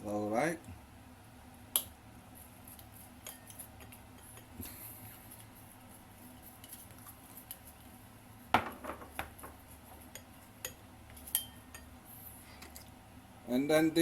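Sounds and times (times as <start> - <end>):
kitchenware clinking: 8.6 - 11.9.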